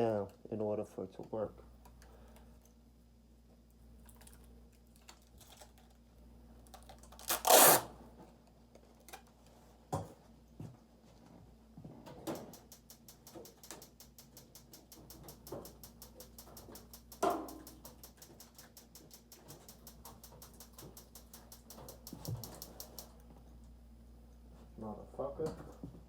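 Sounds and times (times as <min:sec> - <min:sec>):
spark igniter clicking rapidly: 0:12.3 - 0:23.1.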